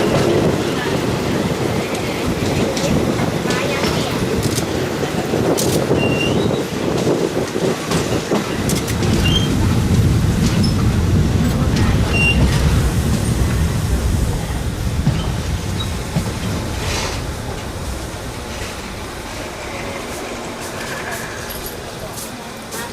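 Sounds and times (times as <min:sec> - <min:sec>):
train wheels rumbling on rail: 0:00.0 - 0:22.9
rail-joint clicks: 0:01.9 - 0:09.5.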